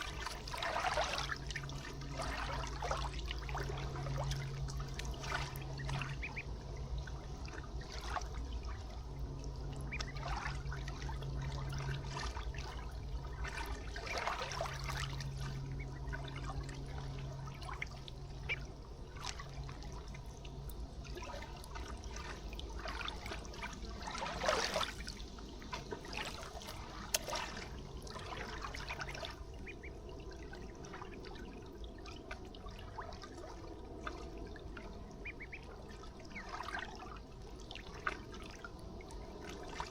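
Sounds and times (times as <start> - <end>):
splashes in water: 0.0 - 6.5, 9.7 - 17.8, 21.0 - 29.8
low hum: 0.0 - 39.9
river water trickling and lapping: 0.0 - 39.9.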